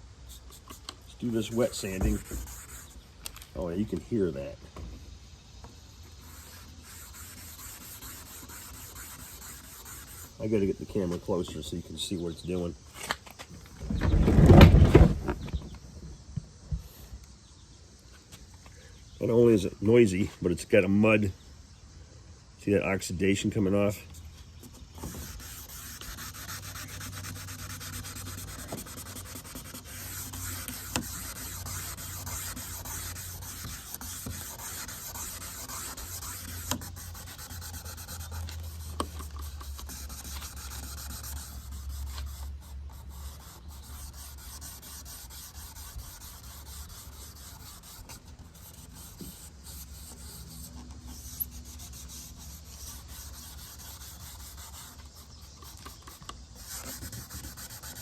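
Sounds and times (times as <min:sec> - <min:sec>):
pad wet-sanding plastic lens: 0:06.2 - 0:10.4, 0:24.8 - 0:58.0.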